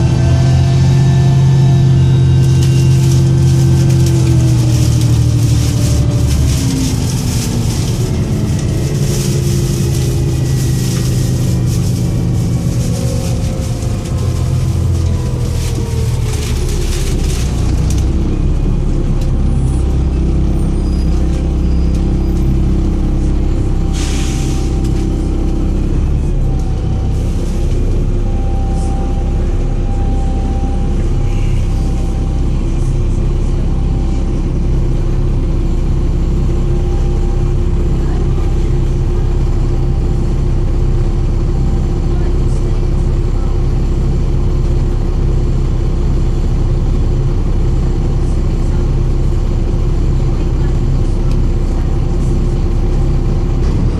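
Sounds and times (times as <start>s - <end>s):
bus diesel engine running: 0.0s - 53.9s.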